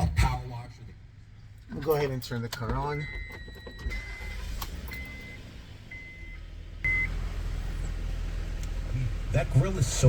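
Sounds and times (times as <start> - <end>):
dashboard warning chime beeping: 2.6 - 7.2.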